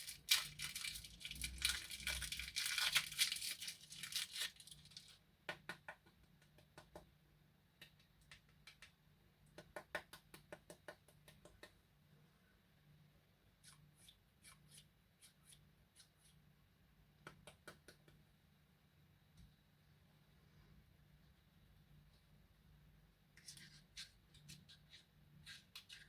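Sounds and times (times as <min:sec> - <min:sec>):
clicks of candy packaging: 0:00.0 - 0:05.2.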